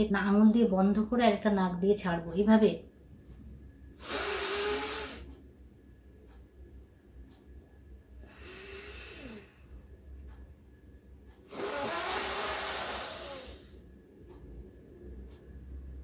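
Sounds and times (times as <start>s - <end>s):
woman breathing through nose: 8.2s - 9.9s, 11.5s - 13.9s.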